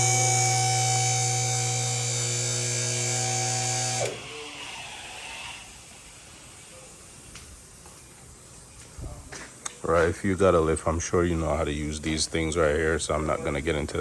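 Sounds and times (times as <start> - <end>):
hydraulic pump motor humming: 0.0 - 5.8.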